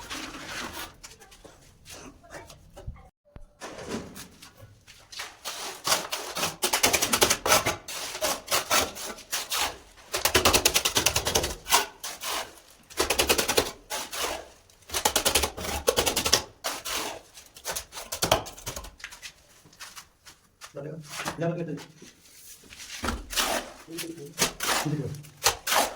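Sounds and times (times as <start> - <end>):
hand tool scraping cement: 0.0 - 2.2, 5.0 - 19.2, 22.1 - 25.9.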